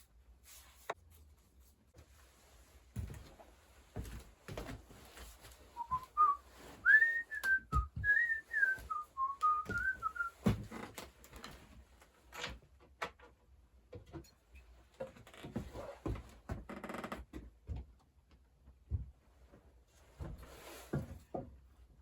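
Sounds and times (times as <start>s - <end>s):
person whistling a tune: 5.8s - 10.4s.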